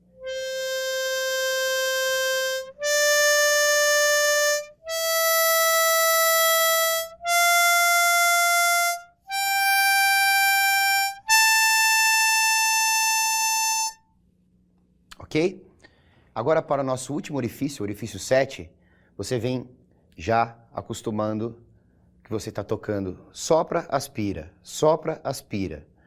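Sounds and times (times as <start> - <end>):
harmonica single notes: 0.0 - 14.1.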